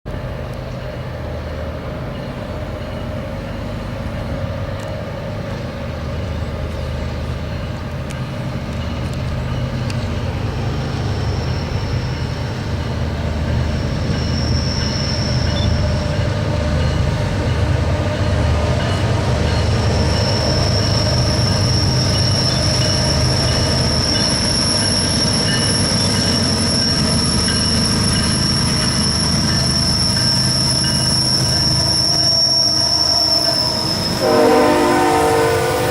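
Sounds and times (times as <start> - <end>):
freight train rumbling past: 0.1 - 35.9
high-pitched wheel squeal: 13.8 - 16.0, 19.5 - 35.9.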